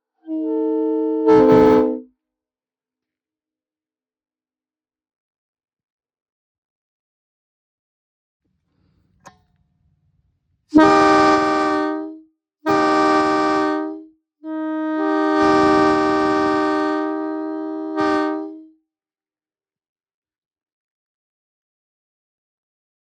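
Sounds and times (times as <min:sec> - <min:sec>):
locomotive air horn blasts: 0:00.2 - 0:02.0, 0:10.7 - 0:18.7.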